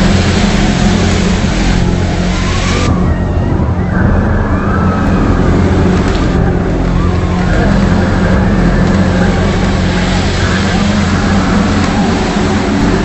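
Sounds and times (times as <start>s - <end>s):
low droning hum: 0.0s - 13.0s.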